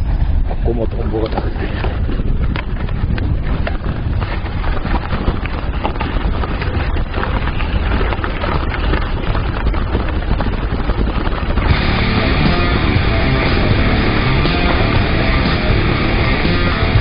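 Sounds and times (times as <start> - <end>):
bicycle rumbling on road: 0.0 - 17.0
wind buffeting microphone: 0.0 - 17.0
small clicks and rattles: 1.2 - 11.7.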